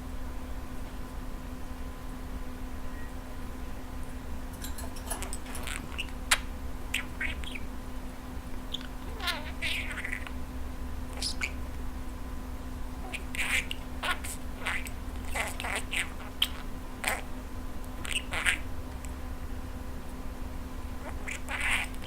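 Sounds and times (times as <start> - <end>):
steady low hum: 0.0 - 22.0
budgerigar chirping: 5.2 - 7.7, 8.7 - 10.4, 11.1 - 11.6, 13.0 - 17.3, 18.0 - 18.7, 21.0 - 22.0.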